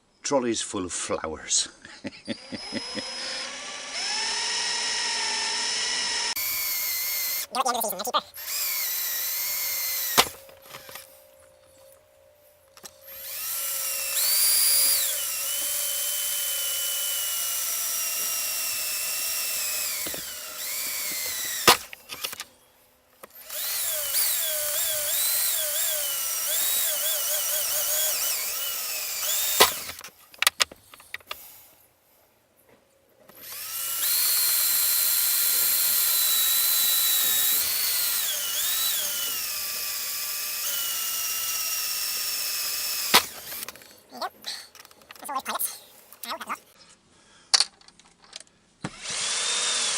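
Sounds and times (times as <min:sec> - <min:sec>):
electric drill whining: 0:02.3 - 0:22.5, 0:23.2 - 0:30.2, 0:33.3 - 0:45.0, 0:48.8 - 0:49.9
sharp clicks: 0:23.2 - 0:31.4.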